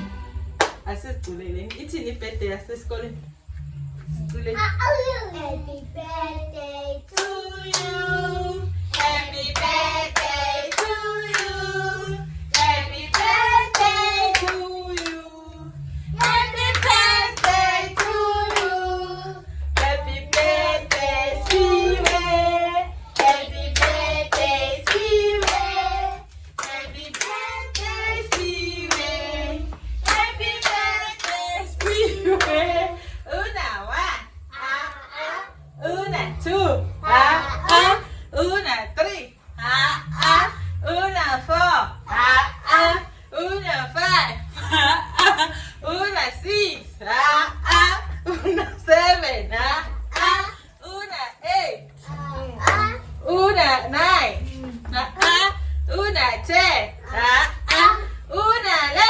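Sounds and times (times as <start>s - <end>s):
hands clapping: 0.6s - 1.8s, 26.6s - 29.1s
group singing: 6.0s - 38.7s, 39.5s - 50.6s, 51.6s - 59.0s.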